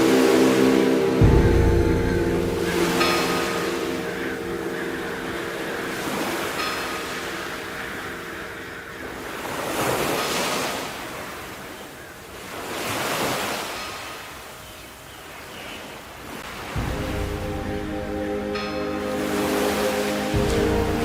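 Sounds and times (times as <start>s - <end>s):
sea waves washing on shore: 0.0s - 21.0s.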